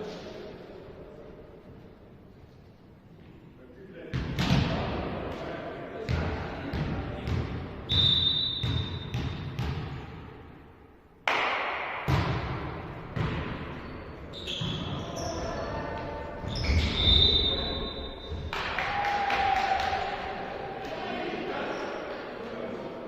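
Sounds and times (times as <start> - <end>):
high whistle blasts: 7.9 - 9.1, 16.5 - 18.4.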